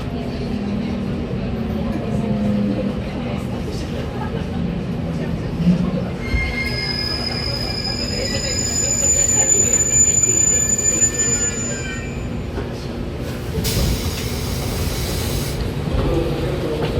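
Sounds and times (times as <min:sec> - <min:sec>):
train wheels squealing: 0:06.2 - 0:12.5.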